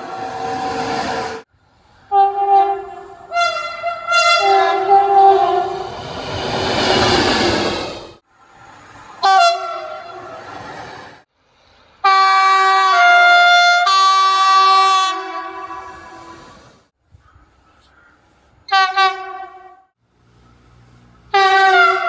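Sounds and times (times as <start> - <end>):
train air horn blasts: 0.0 - 1.4, 2.0 - 6.1, 9.2 - 10.4, 12.0 - 16.7, 18.7 - 20.0, 20.6 - 22.0.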